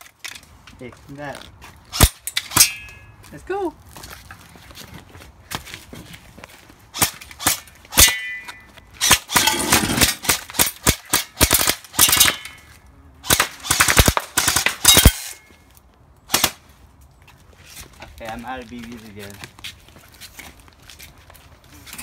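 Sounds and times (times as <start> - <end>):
airsoft rifle firing: 9.0 - 12.6, 13.2 - 15.3.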